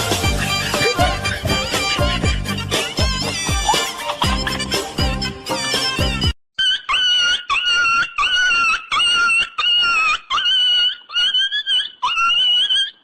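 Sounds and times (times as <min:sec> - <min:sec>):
high-pitched squeaking call: 0:00.0 - 0:13.0.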